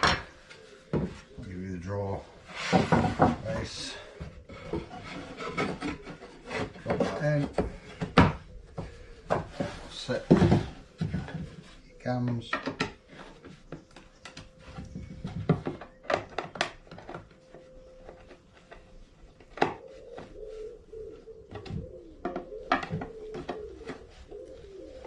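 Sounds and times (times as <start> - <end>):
wooden panels knocking together: 0.0 - 0.3, 2.6 - 11.6, 21.5 - 24.1.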